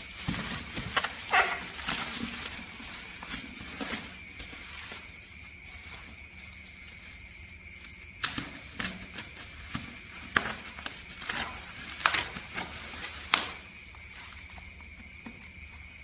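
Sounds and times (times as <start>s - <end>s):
faint hum with high tone: 0.0s - 16.0s
packaging clicking and crackling: 8.2s - 13.7s.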